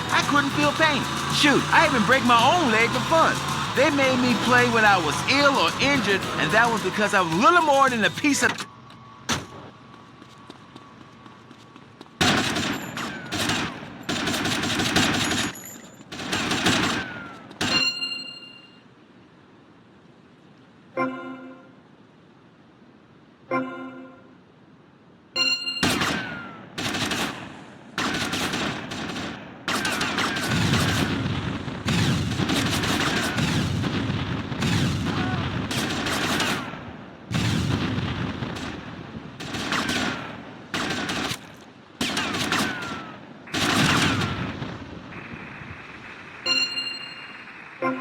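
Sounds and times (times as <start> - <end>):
bursts of rapid gunfire: 0.0 - 8.5, 12.2 - 18.0, 25.8 - 46.6.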